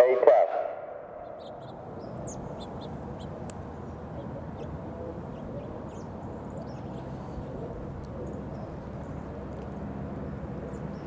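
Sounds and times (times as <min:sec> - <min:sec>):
siren voice announcement echo: 0:00.0 - 0:01.2
birds chirping: 0:01.1 - 0:11.0.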